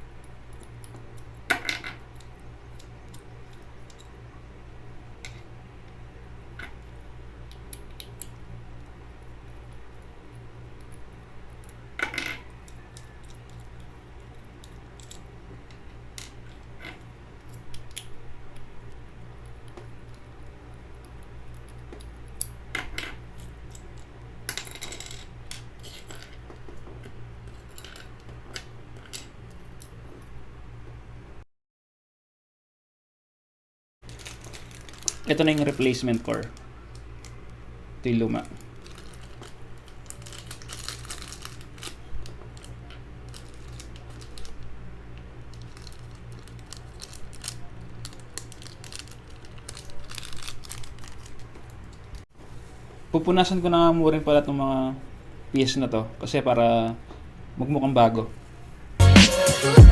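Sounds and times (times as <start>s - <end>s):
steady low hum: 0.0s - 31.4s.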